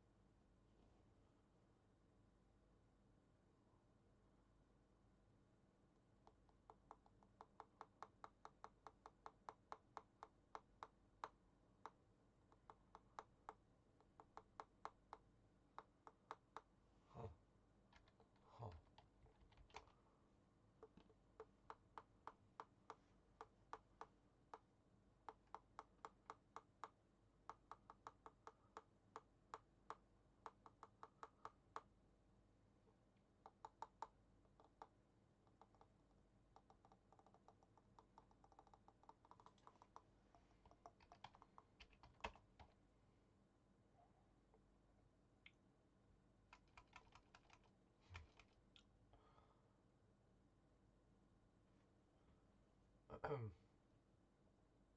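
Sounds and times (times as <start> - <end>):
computer keyboard typing: 36.6 - 42.8, 46.5 - 48.6.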